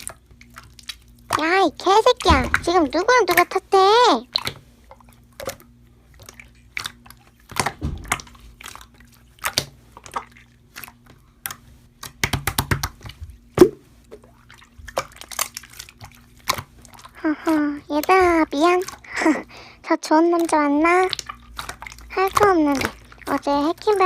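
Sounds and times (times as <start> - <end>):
slime squished by hand: 20.4 - 24.0.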